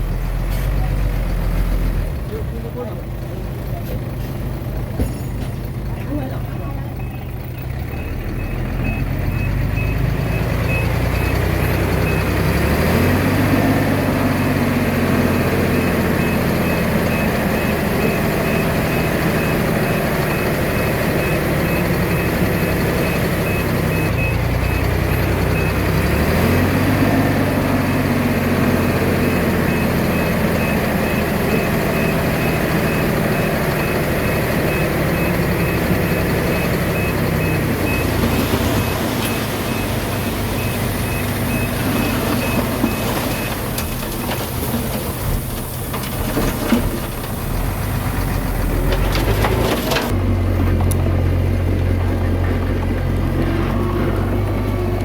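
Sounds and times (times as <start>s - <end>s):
bulldozer diesel engine running: 0.0s - 55.0s
reversing alarm beeping: 6.9s - 43.9s.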